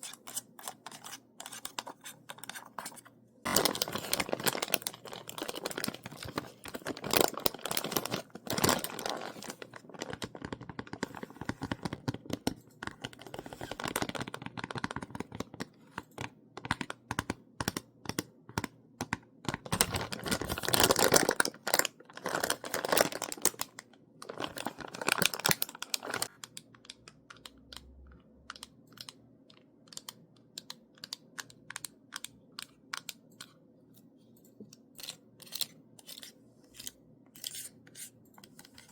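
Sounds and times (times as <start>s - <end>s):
crinkly rustling: 0.6s - 16.2s, 19.5s - 26.3s.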